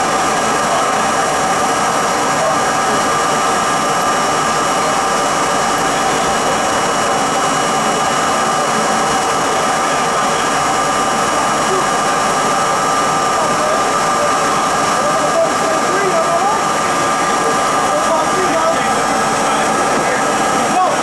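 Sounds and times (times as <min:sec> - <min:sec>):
motor and gear whine: 0:00.0 - 0:21.0.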